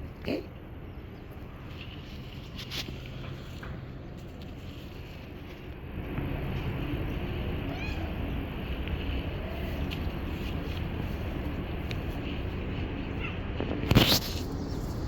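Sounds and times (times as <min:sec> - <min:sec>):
low background rumble: 0:00.0 - 0:15.0
cat meowing: 0:07.6 - 0:08.4.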